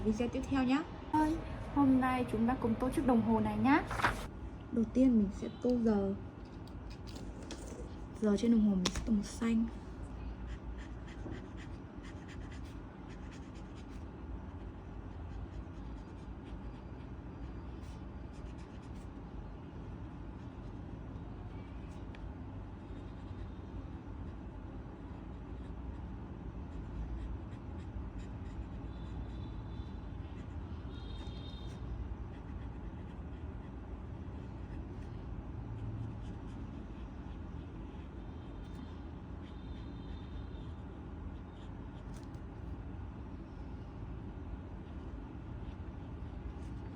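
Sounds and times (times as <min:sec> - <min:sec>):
low steady rumble: 0:00.0 - 0:46.9
colouring tool scratching on paper: 0:10.4 - 0:19.3, 0:22.7 - 0:42.4.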